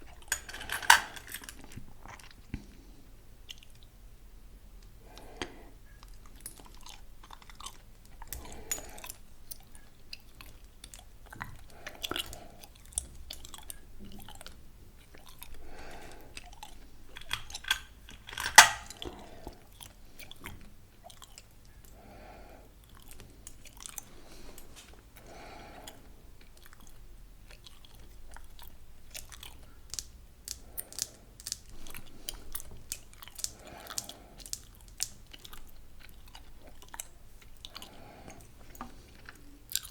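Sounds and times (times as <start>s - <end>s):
gum chewing mouth smacks: 3.4s - 3.9s, 5.1s - 17.8s, 22.8s - 39.9s.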